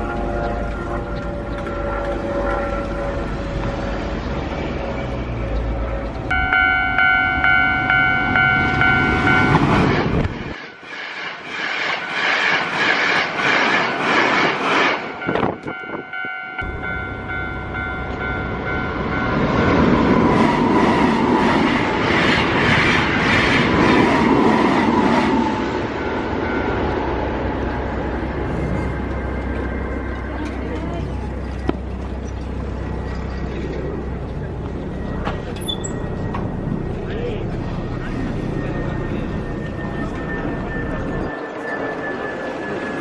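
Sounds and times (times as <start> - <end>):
horn sounding a chord: 6.3 - 9.6
long falling tone: 6.3 - 10.4, 33.9 - 43.0
steady rumble: 16.6 - 43.0.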